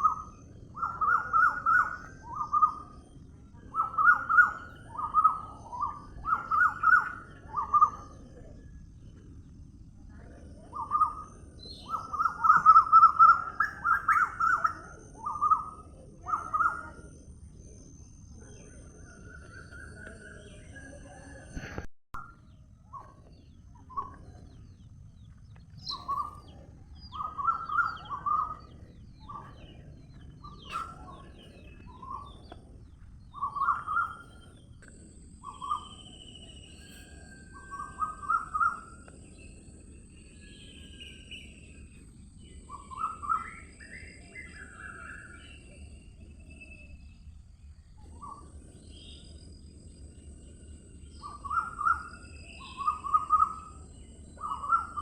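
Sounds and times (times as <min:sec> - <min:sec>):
birds calling: 0:00.0 - 0:17.1, 0:22.9 - 0:46.8, 0:48.0 - 0:55.0.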